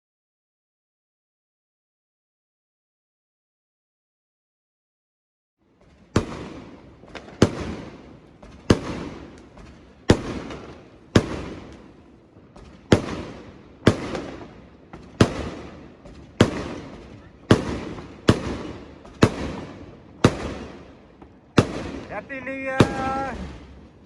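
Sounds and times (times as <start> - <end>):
fireworks bursting: 5.7 - 24.0.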